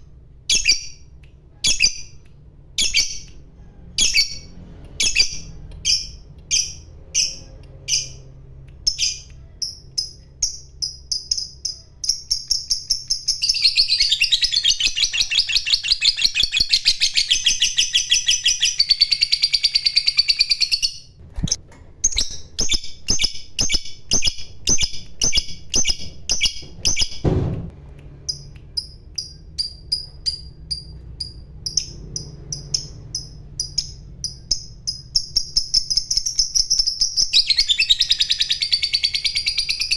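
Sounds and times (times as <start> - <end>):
lovebird chirping and trilling: 0.5 - 27.2, 28.2 - 39.9
low thump: 26.0 - 27.8.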